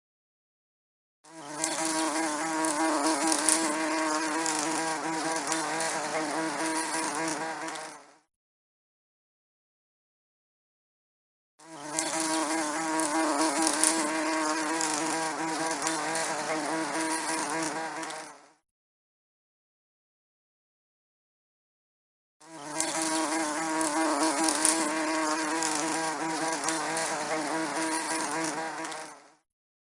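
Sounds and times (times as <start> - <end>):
bee buzzing: 1.3 - 8.3, 11.6 - 18.6, 22.4 - 29.4.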